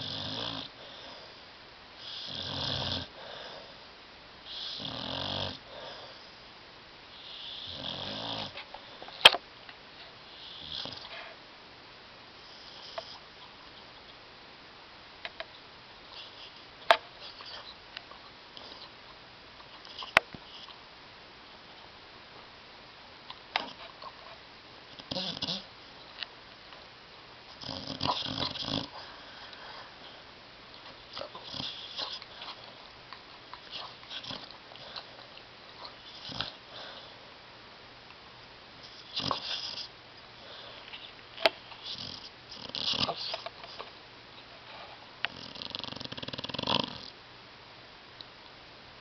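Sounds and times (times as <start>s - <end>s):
dog snoring: 0.0s - 1.4s, 2.0s - 3.8s, 4.4s - 6.4s, 7.1s - 8.6s, 10.3s - 11.3s, 12.4s - 13.2s, 25.0s - 25.7s, 27.5s - 29.5s, 31.1s - 32.6s, 33.7s - 35.1s, 35.8s - 37.1s, 38.9s - 40.8s, 41.8s - 43.4s, 45.3s - 47.1s
steady hiss: 0.0s - 49.0s.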